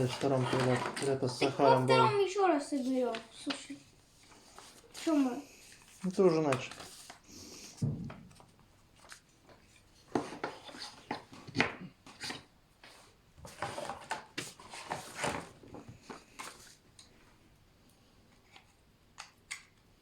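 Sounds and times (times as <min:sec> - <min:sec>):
kit parts and packaging rustling: 0:00.0 - 0:07.3, 0:08.0 - 0:17.1.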